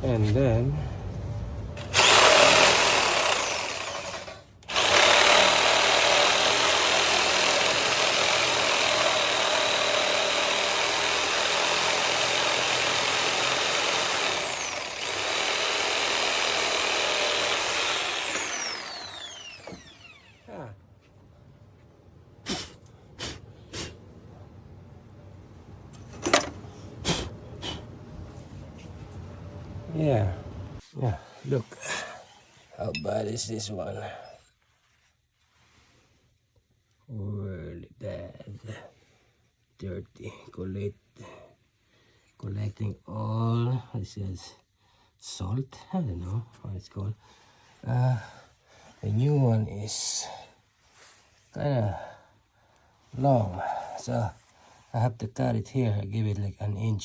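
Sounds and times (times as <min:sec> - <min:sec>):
power drill whining: 0:01.8 - 0:20.6
metal clanks: 0:26.0 - 0:26.6.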